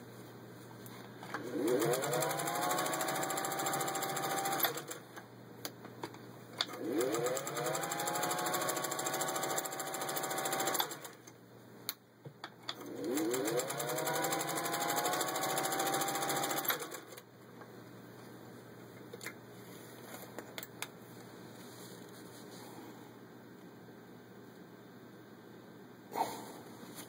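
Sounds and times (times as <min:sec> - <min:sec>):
sewing machine stitching: 0:01.4 - 0:05.0, 0:06.7 - 0:11.2, 0:12.8 - 0:17.2.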